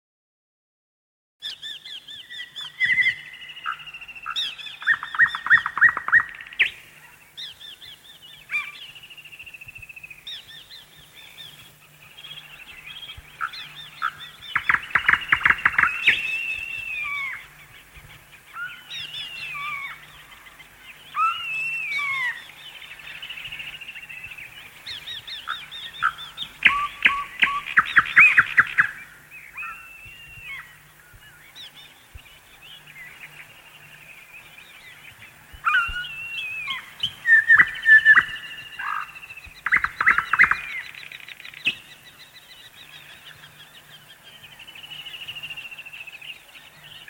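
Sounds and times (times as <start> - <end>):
birds chirping and trilling: 1.4 - 47.0.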